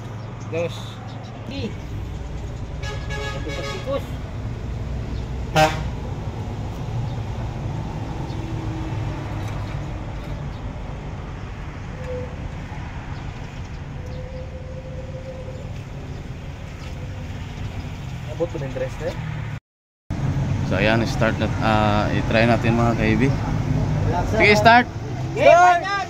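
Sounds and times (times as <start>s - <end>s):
vehicle engine idling: 0.0s - 8.4s, 9.2s - 19.1s
short horn toot: 2.8s - 4.1s, 5.5s - 6.0s.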